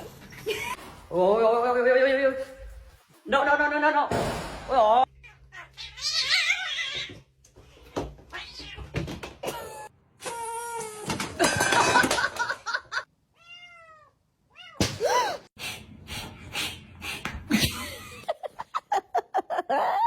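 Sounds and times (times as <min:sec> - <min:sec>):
cat meowing: 0:13.4 - 0:14.8.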